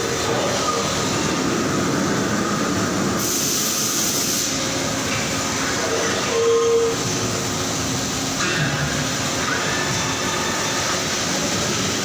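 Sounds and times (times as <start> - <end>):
factory machinery din: 0.0 - 12.0
hiss: 3.2 - 4.7.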